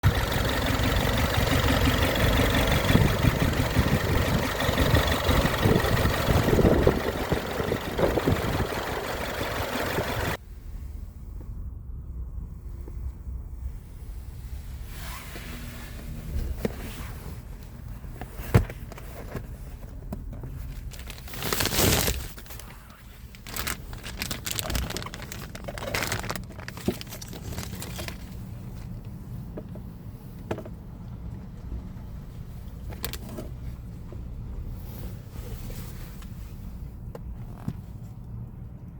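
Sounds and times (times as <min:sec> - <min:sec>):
misfiring car engine idling: 0:00.0 - 0:10.4
handling rustling and clicks: 0:17.6 - 0:29.8.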